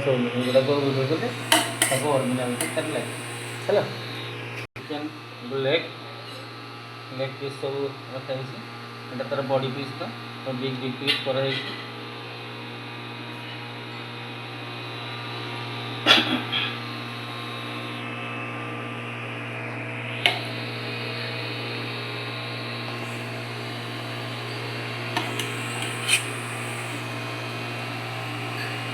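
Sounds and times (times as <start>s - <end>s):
electrical hum: 0.6s - 5.2s, 20.1s - 28.9s
kitchen utensils clinking: 1.4s - 3.7s.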